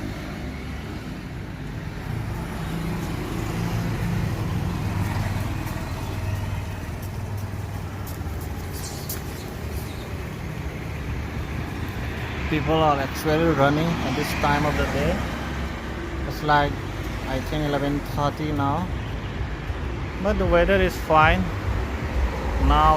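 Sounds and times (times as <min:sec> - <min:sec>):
low rumble of road traffic: 0:00.0 - 0:22.9.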